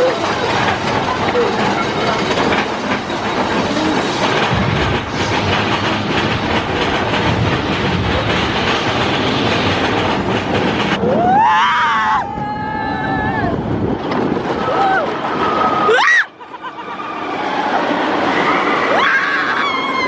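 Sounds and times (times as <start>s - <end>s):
roller coaster wheels clattering: 0.0s - 20.0s.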